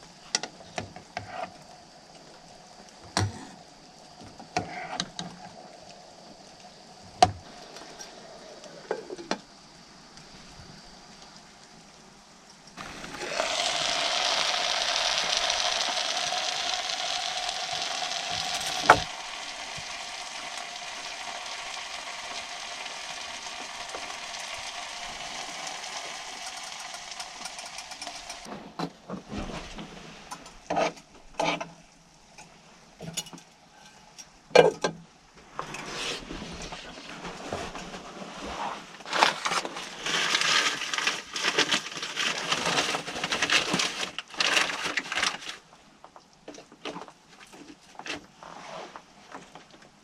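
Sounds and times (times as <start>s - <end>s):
food sizzling in a pan: 12.8s - 28.5s.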